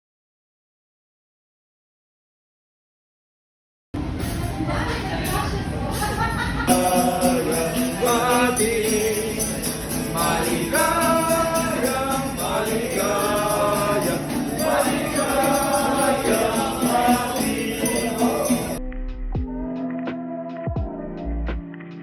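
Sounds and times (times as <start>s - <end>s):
jingling percussion rhythm: 4.0s - 18.8s
person singing melody: 6.7s - 18.8s.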